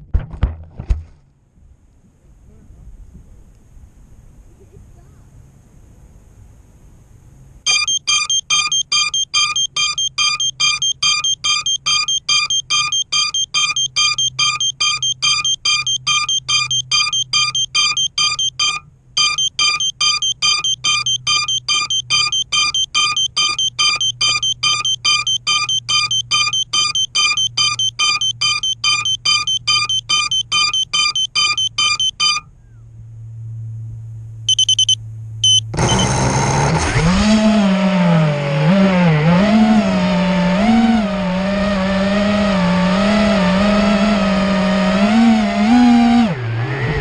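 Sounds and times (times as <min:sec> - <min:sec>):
short electronic beeps: 0:07.7 - 0:32.5, 0:34.5 - 0:36.2.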